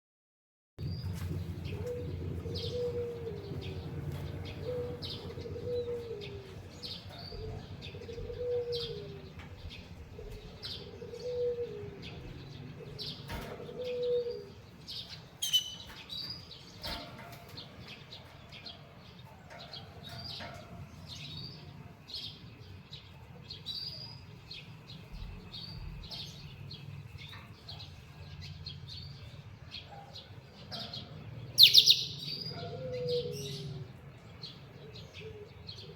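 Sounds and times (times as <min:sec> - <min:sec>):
cage birds chirping: 0:00.8 - 0:35.9.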